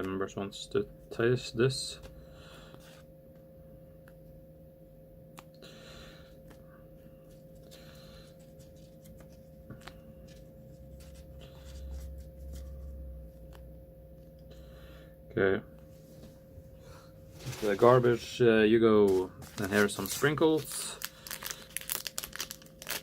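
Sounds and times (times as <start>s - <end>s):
faint steady hum: 0.0s - 23.0s
hands handling plastic packaging: 7.2s - 13.6s, 17.2s - 18.4s, 19.0s - 23.0s.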